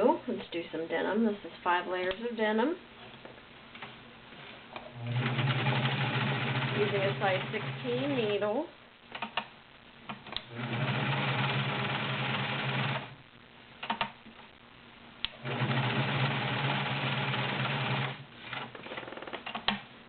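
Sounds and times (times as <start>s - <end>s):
sewing machine stitching: 4.9s - 8.4s, 10.5s - 13.2s, 15.3s - 18.2s
sharp clicks: 9.1s - 10.5s, 13.8s - 14.2s.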